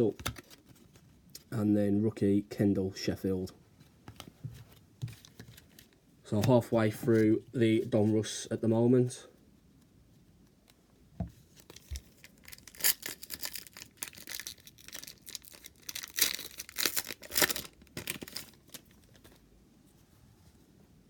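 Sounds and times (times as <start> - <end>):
wrapper ripping and rustling: 11.5 - 19.4.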